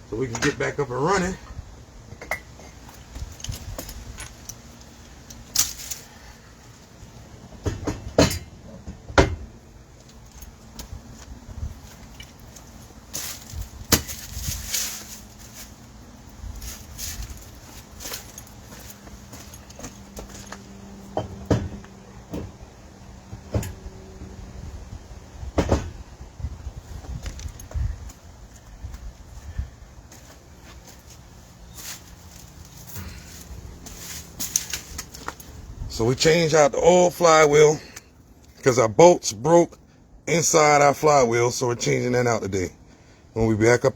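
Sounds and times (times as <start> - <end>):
metallic knocks and clanks of tools: 7.6 - 9.4.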